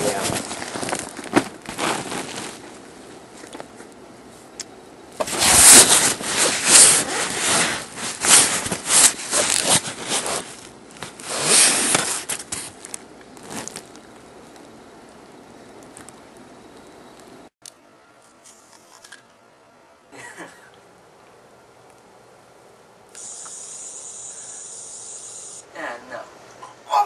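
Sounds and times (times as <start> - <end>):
rustling and scraping handling: 0.0 - 4.5, 5.2 - 14.7.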